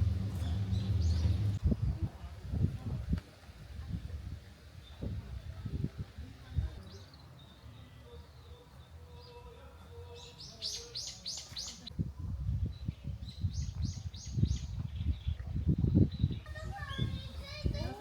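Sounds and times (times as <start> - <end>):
songbird chirping: 0.0 - 2.0, 6.3 - 12.0.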